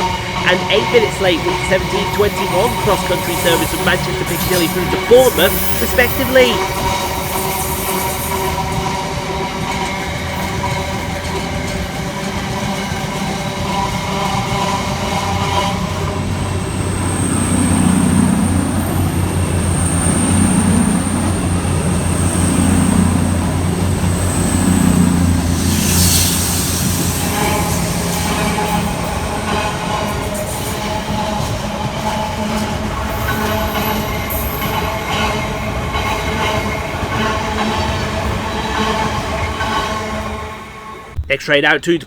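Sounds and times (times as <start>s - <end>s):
high wheel squeal: 0.0s - 12.0s
freight train rumbling: 0.0s - 41.4s.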